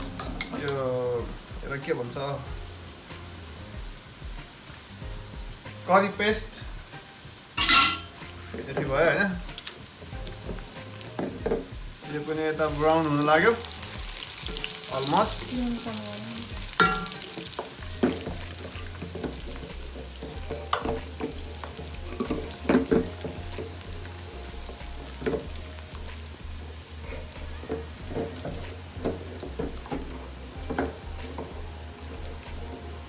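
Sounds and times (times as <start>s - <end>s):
onions sizzling in a pan: 0.0s - 33.0s
spoon scraping a pan: 5.6s - 33.0s.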